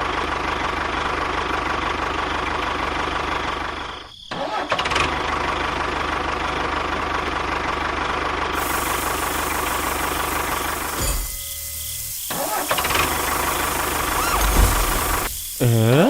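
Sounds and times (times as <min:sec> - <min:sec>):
engine idling with knocking chug: 0:00.0 - 0:16.0.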